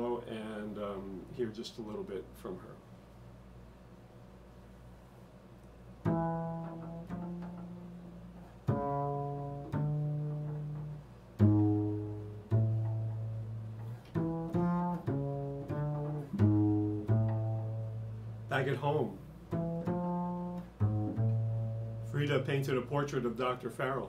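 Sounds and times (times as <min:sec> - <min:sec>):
plucked low string notes: 0:06.0 - 0:22.9.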